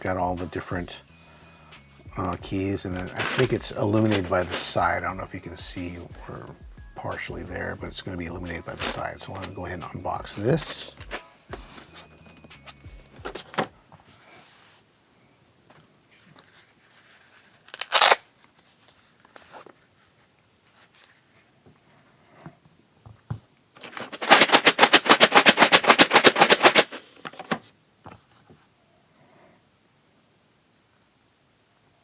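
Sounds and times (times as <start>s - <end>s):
packaging ripping: 3.0s - 4.8s, 17.6s - 18.5s, 23.8s - 27.2s
rapid run of sharp clicks: 3.0s - 4.8s, 24.1s - 27.0s.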